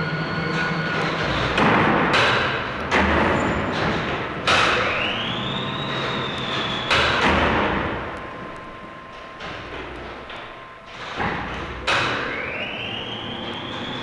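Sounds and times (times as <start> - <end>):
loud machinery clunks: 0.0 - 8.2, 9.1 - 14.0
steady low hum: 0.0 - 14.0
motor whine: 4.8 - 14.0.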